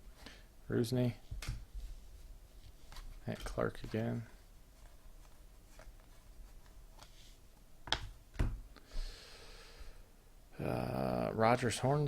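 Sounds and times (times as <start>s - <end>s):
cards sliding rustle: 4.8s - 7.4s
trading cards clicking and tapping: 7.9s - 8.5s.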